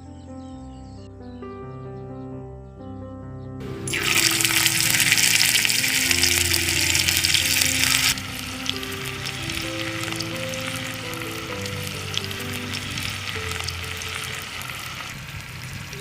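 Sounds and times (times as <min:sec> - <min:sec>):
background music: 0:00.0 - 0:15.2
liquid hissing in hot pan: 0:03.9 - 0:16.0
sizzle with small crackles: 0:03.9 - 0:16.0.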